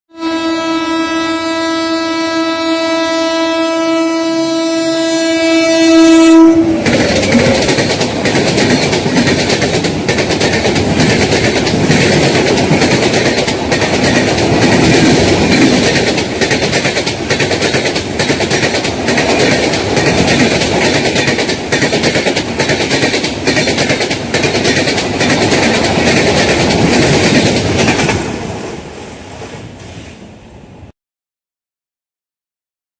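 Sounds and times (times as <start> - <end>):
locomotive horn blast: 0.1 - 6.9
train rushing past: 5.0 - 30.9.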